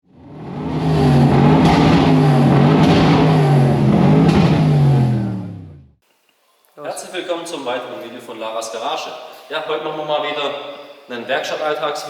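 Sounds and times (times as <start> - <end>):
car engine revving: 0.0 - 6.0.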